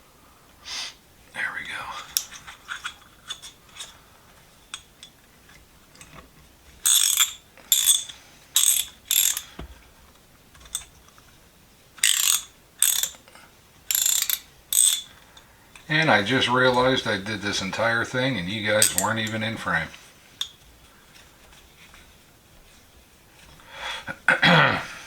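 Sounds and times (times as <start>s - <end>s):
ratchet wrench clicking: 6.8s - 9.5s, 12.0s - 13.2s, 13.9s - 15.1s, 18.8s - 19.2s.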